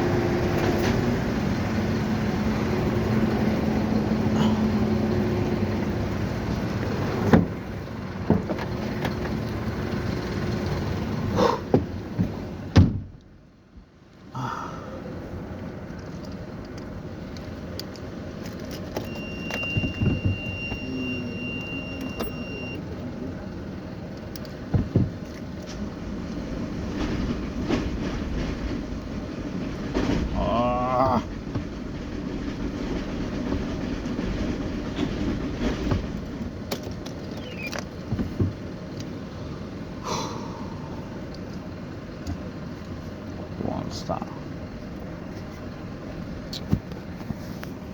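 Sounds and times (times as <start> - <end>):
vehicle engine running: 0.0 - 47.9
steady high beep: 19.1 - 22.8.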